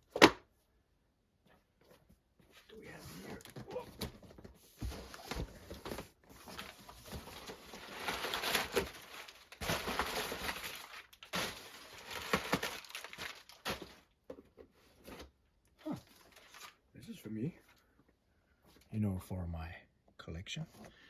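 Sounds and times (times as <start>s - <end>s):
packaging rustling: 3.3s - 14.1s.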